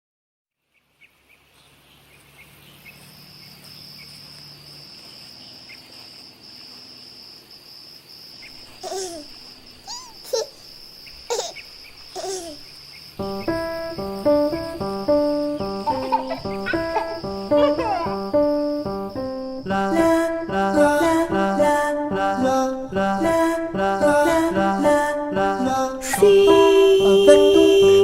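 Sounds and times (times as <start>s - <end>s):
night insects trilling: 1.7s - 28.0s
squealing vocal sounds: 15.6s - 18.3s.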